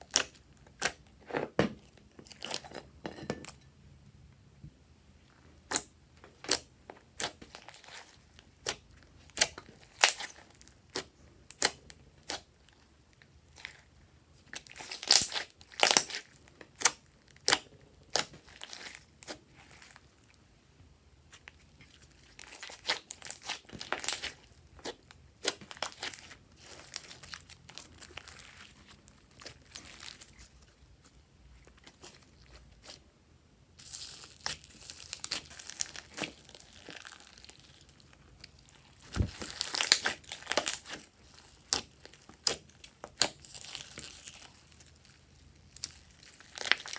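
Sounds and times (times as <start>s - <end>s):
slime squeezed by hand: 39.0s - 40.1s.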